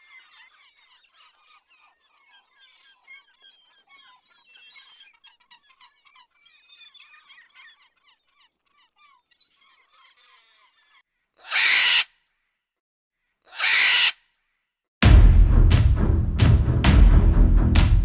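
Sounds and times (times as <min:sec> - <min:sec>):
birds chirping and whistling: 0:00.0 - 0:08.3.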